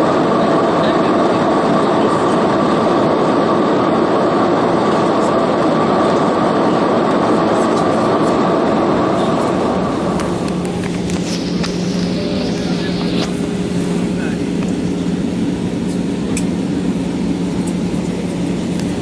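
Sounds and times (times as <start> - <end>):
jet engines droning: 0.0 - 19.0
rush of airflow: 7.9 - 19.0.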